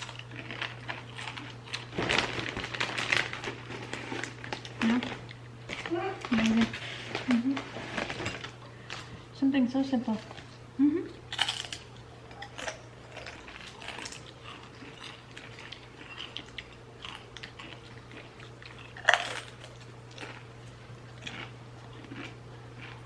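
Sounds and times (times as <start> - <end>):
person chewing crunchy snack: 0.0 - 5.4, 11.2 - 23.0
steady low hum: 0.0 - 23.0.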